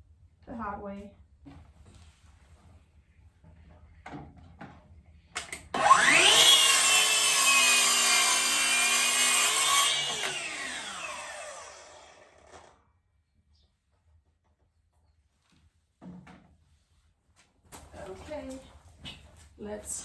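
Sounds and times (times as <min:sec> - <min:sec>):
saw clicks: 0:05.4 - 0:12.7
circular saw cutting wood: 0:05.7 - 0:12.8.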